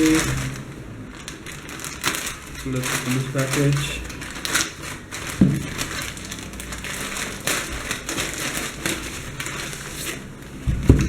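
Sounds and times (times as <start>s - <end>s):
packaging crinkling and tearing: 0.0s - 11.0s.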